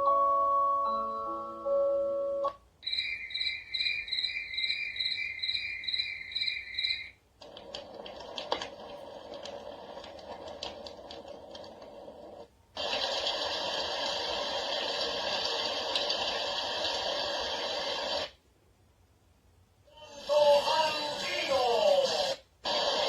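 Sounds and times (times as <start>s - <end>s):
steady white noise: 0.0s - 23.0s
recorded cricket chirping: 2.8s - 7.2s
crackly noise with clicks: 4.6s - 18.4s.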